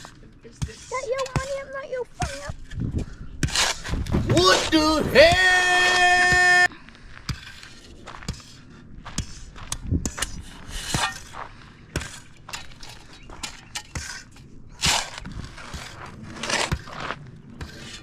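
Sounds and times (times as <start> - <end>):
shovel striking hard dirt: 0.0 - 2.8, 3.4 - 6.6, 7.2 - 18.0
shovel scraping dirt: 0.0 - 6.6, 7.2 - 18.0.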